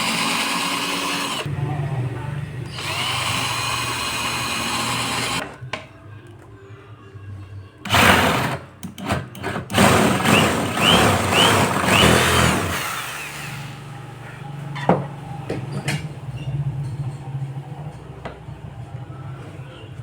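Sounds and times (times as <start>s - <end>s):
power tool running: 0.0s - 1.5s, 2.6s - 5.4s, 7.9s - 14.0s.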